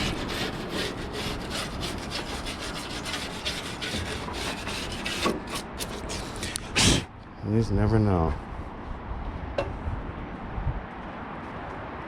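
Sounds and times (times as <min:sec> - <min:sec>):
rubbing and scuffing on car body: 0:00.0 - 0:06.7.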